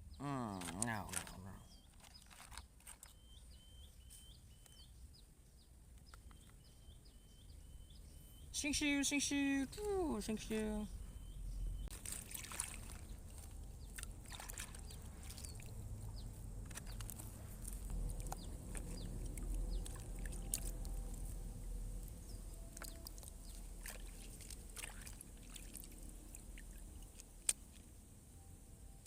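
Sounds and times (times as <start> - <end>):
water splashing and sloshing: 0.6 - 3.4, 11.7 - 28.0
low rumble: 10.9 - 12.1, 12.9 - 25.3.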